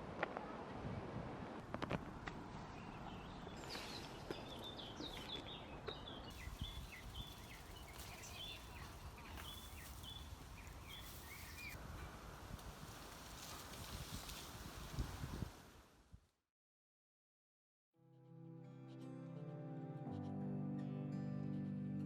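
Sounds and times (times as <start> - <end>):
small songbirds chirping: 2.7 - 11.8.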